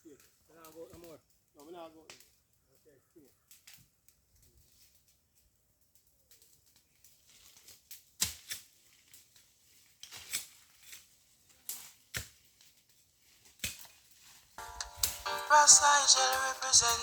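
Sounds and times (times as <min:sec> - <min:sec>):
sharp cracks and clicks: 0:14.6 - 0:17.0.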